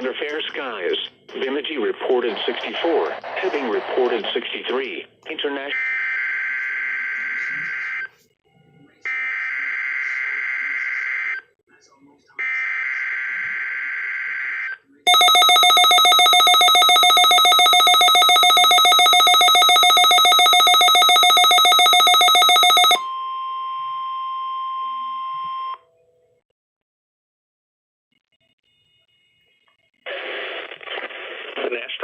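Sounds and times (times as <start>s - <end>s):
rapidly pulsing alert alarm: 15.1s - 23.0s
steady warning alarm tone: 15.1s - 23.1s.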